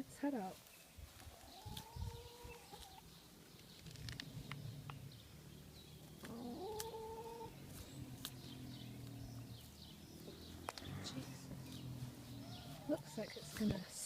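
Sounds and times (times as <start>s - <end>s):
chicken calling: 1.3s - 3.1s, 6.1s - 13.6s
sharp clicks: 3.6s - 5.0s.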